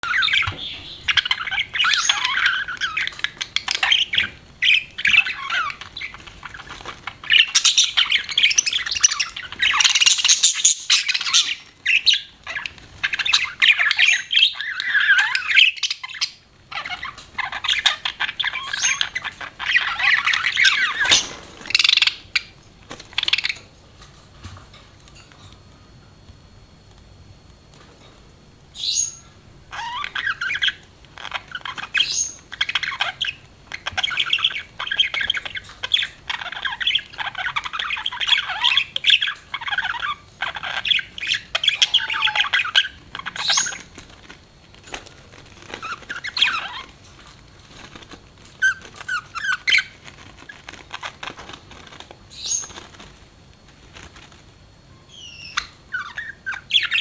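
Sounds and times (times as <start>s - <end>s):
budgerigar chirping and chattering: 0.0s - 22.6s, 28.8s - 43.9s, 45.8s - 47.0s, 48.6s - 51.3s, 52.3s - 52.9s, 55.1s - 57.0s.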